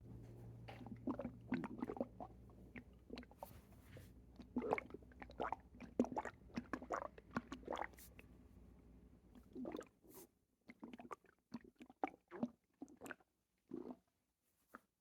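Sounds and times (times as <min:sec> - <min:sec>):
stomach gurgling: 0:00.7 - 0:03.4, 0:04.3 - 0:08.0, 0:09.4 - 0:10.0, 0:10.6 - 0:14.2.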